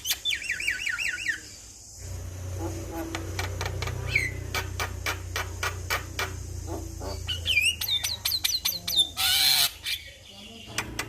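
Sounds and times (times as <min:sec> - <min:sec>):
bird harsh rasp: 0:02.0 - 0:10.1
bird singing clicks and whistles: 0:10.6 - 0:11.0.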